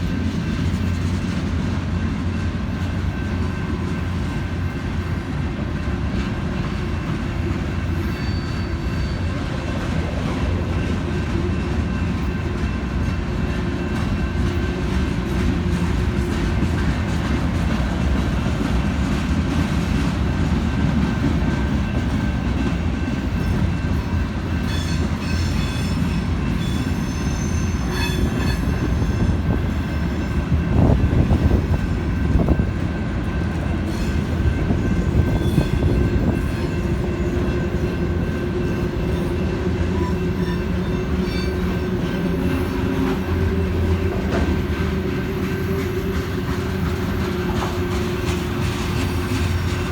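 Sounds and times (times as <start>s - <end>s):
freight train wheels rumbling: 0.0s - 49.9s
high-pitched wheel squeal: 8.0s - 9.4s, 26.6s - 30.3s.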